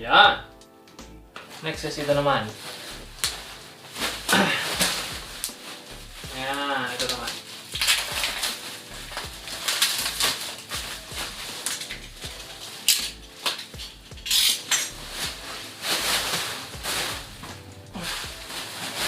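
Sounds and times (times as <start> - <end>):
metal parts clinking: 12.8 - 15.0.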